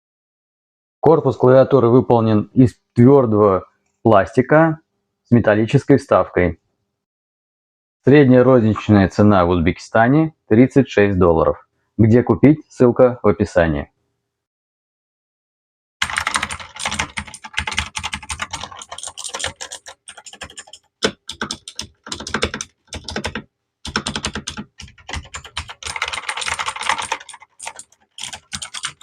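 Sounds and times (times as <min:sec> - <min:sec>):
mechanical keyboard typing: 0:16.0 - 0:29.0.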